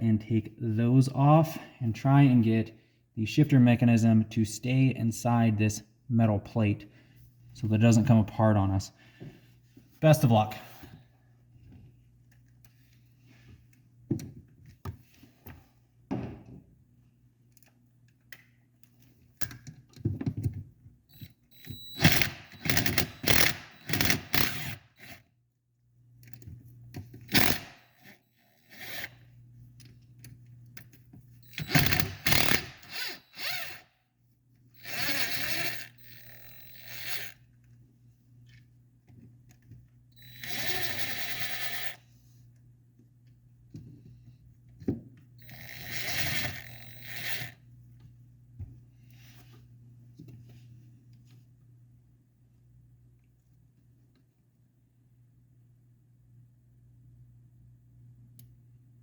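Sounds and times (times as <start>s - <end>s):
rasping tool: 21.6s - 25.2s, 31.4s - 33.8s, 34.8s - 37.4s, 40.2s - 42.0s, 45.4s - 47.6s.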